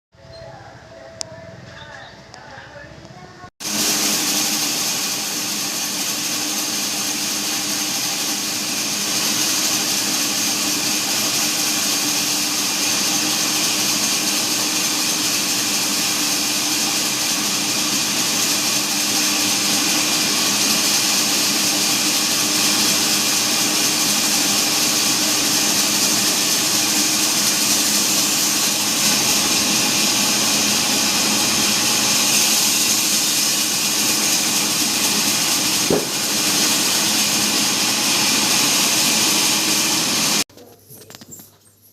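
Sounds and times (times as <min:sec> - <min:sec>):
bandsaw cutting wood: 0:03.6 - 0:40.5.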